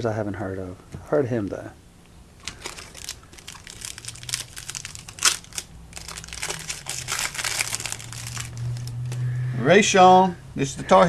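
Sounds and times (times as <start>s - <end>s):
foil wrapper crinkling: 2.4s - 9.1s.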